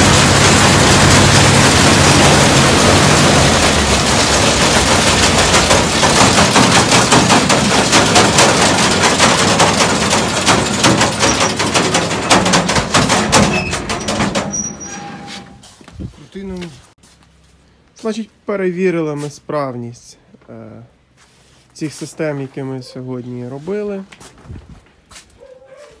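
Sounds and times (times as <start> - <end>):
machinery clattering: 0.0 - 15.7
engine hum: 0.0 - 17.7.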